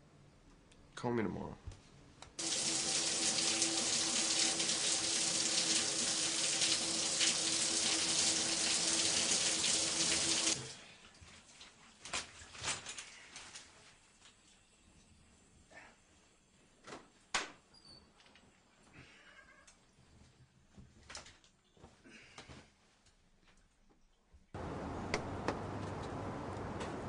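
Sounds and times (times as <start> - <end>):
shower water hissing: 2.4 - 10.9.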